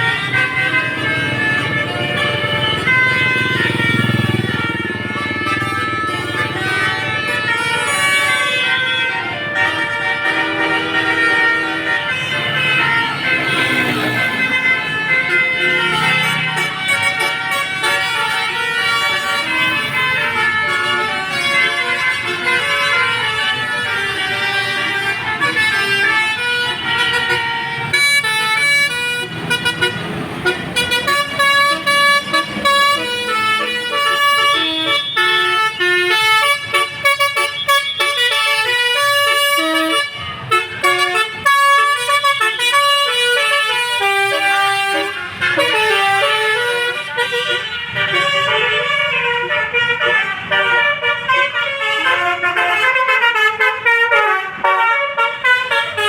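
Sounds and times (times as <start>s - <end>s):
vehicle engine noise: 0.0s - 10.1s, 10.8s - 38.0s
multi-tone bus horn melody: 0.0s - 56.0s.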